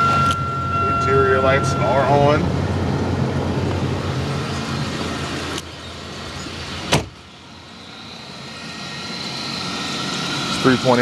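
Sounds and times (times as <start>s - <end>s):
car engine idling: 0.0s - 11.0s
sharp thump: 6.9s - 7.2s.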